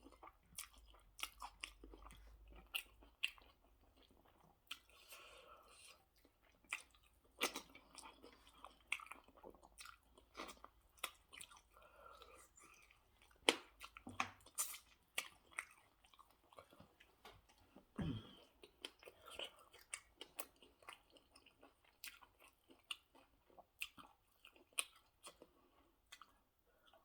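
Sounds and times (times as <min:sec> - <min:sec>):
person chewing food: 0:00.0 - 0:27.0
throaty sound: 0:18.0 - 0:18.4.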